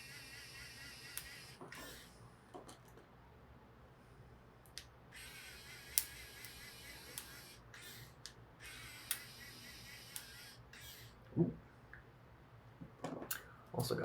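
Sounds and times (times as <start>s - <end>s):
small motor whirring: 0.0s - 2.2s, 5.1s - 11.2s.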